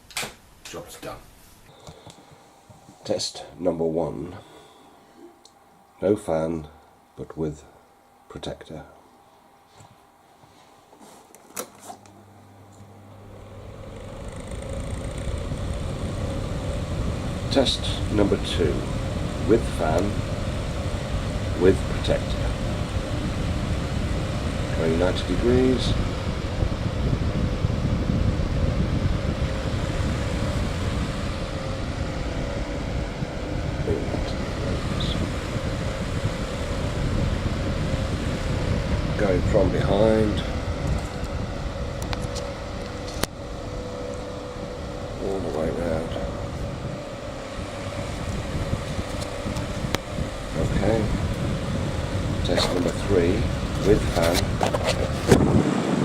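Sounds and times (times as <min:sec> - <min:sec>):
fan motor hum: 0:00.0 - 0:56.0
air rushing on microphone: 0:13.2 - 0:56.0
fan switch click: 0:42.0 - 0:43.4, 0:48.0 - 0:50.2.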